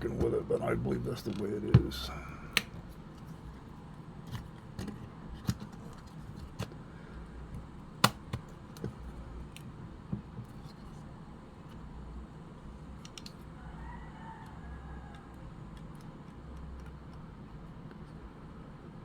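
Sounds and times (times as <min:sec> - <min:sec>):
small clicks and taps of camera parts: 0:13.0 - 0:13.4.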